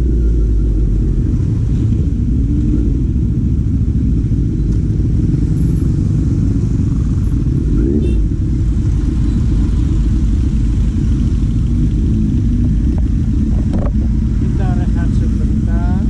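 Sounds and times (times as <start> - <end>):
car engine running: 0.0 - 16.0
low rumble: 0.0 - 16.0.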